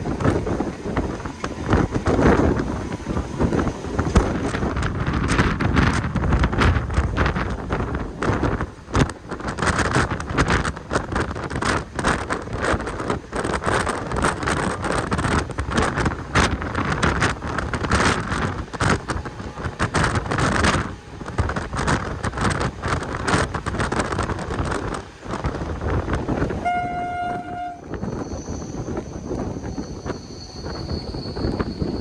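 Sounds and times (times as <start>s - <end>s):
train clattering on track: 0.0s - 32.0s
train horn blast: 26.5s - 28.0s.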